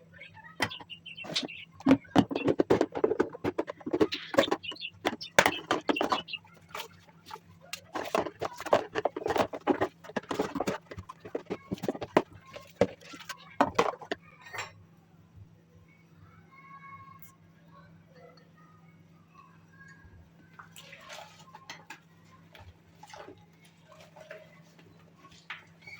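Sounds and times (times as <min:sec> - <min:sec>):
clicks and knocks of small objects: 0:00.6 - 0:14.8.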